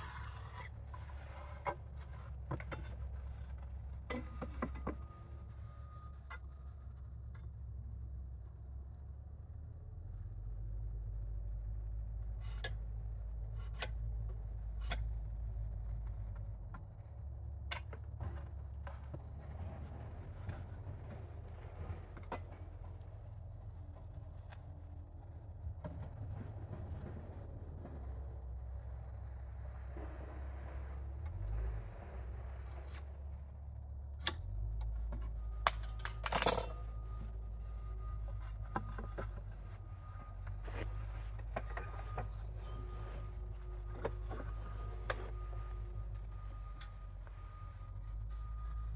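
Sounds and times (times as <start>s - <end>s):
low steady hum: 0.0s - 48.9s
tools tapping and knocking: 35.1s - 37.3s.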